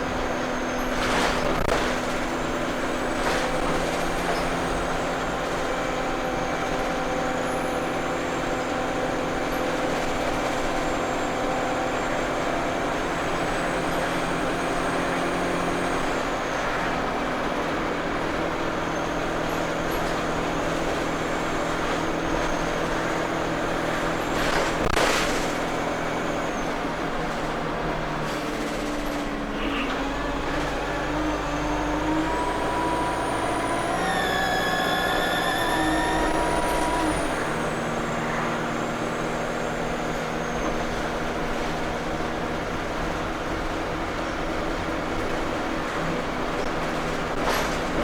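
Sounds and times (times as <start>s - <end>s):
bus diesel engine running: 0.0s - 48.0s
high turbo whine: 29.5s - 44.9s.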